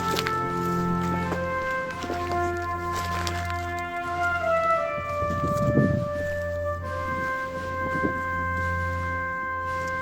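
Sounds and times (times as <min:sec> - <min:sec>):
music with long held chords: 0:00.0 - 0:10.0.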